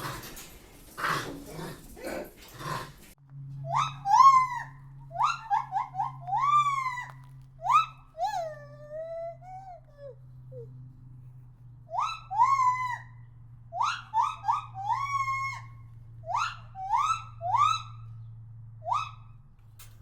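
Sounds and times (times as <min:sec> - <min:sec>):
monkey hooting: 0:03.6 - 0:10.7, 0:11.9 - 0:18.1, 0:18.8 - 0:19.3.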